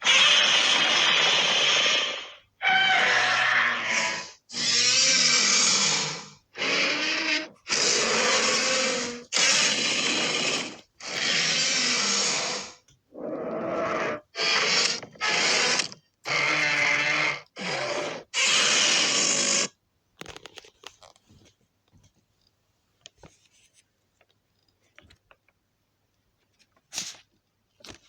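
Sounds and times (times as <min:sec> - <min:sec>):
monster roaring: 0:00.0 - 0:19.6.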